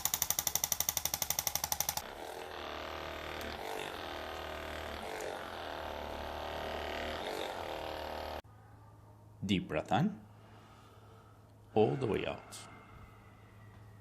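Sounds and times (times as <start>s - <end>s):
rapid mechanical pulsing: 0.0s - 8.4s.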